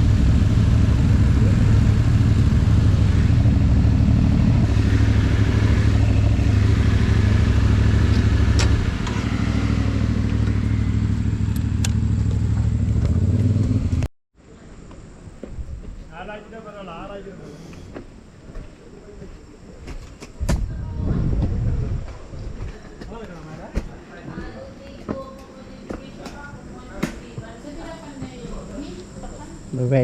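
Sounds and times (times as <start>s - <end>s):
motorcycle engine rumble: 0.0s - 16.0s.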